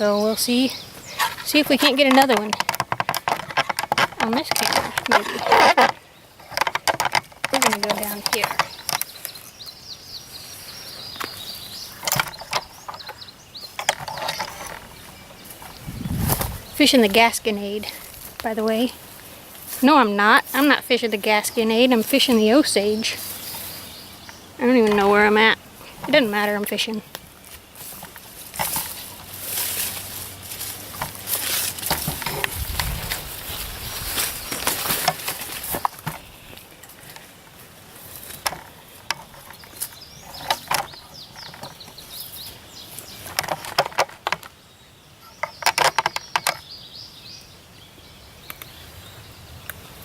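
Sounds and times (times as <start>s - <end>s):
low rumble: 15.8s - 16.8s
footsteps crunching through leaves: 27.2s - 39.0s.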